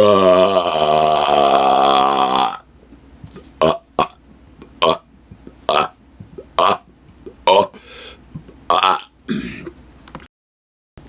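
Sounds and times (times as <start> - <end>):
man belching: 0.0 - 2.7, 3.6 - 4.2, 4.8 - 5.1, 5.7 - 7.8, 8.7 - 9.7.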